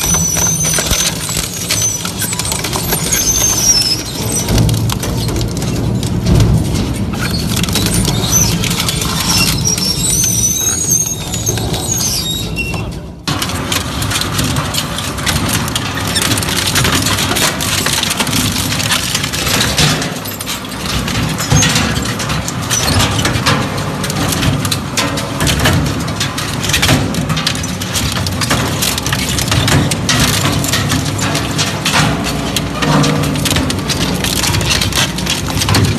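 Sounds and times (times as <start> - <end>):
material cracking and snapping: 0.0 - 10.7
crushing machine motor rumble: 0.0 - 35.9.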